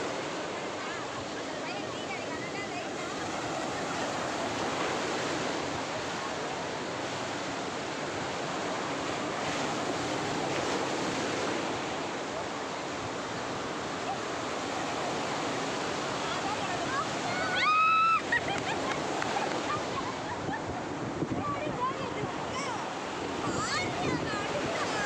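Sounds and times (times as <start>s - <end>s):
ocean waves washing: 0.0s - 25.0s
wind on microphone: 12.9s - 25.0s.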